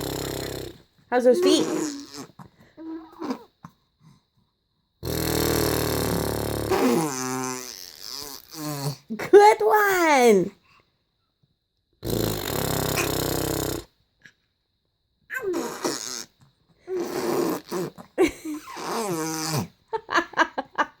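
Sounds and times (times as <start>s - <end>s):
imitation fart noises: 0.0s - 0.8s, 1.4s - 2.4s, 5.0s - 9.0s, 12.0s - 13.9s, 15.3s - 18.0s, 18.6s - 19.7s
grunting vocal sounds: 0.0s - 2.3s.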